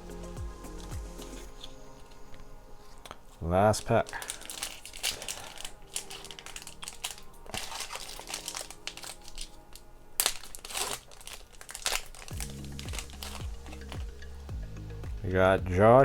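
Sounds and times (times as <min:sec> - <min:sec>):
foil wrapper crinkling and tearing: 0:02.8 - 0:14.5.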